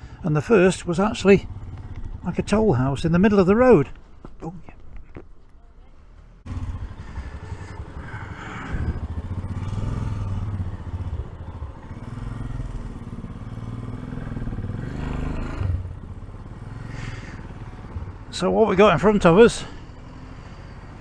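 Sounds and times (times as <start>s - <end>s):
motorcycle engine revving: 1.0s - 3.0s, 6.4s - 21.0s.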